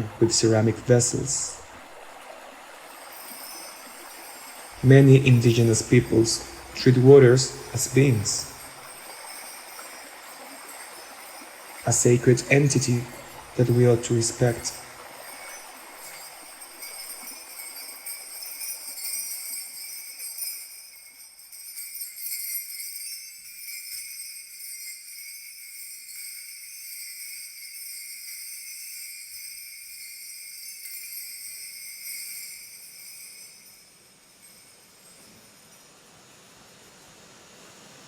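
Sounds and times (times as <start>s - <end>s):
bronze bells jingling: 0.0s - 37.8s.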